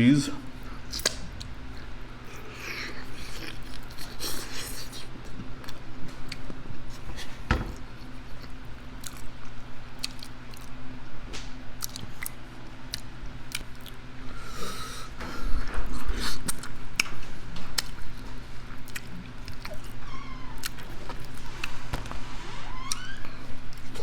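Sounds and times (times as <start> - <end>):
chewing and mouth smacking: 0.9 - 7.1, 7.9 - 10.8, 11.8 - 14.0, 15.8 - 20.0.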